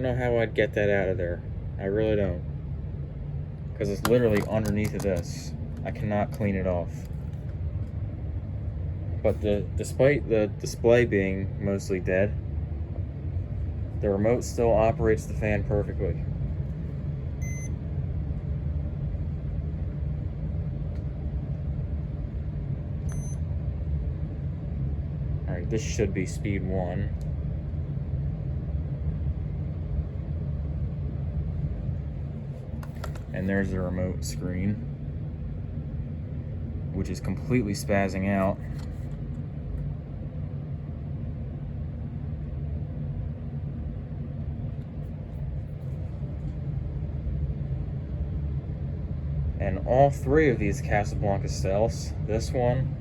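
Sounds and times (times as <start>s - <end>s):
ceiling fan rumbling: 0.0s - 53.0s.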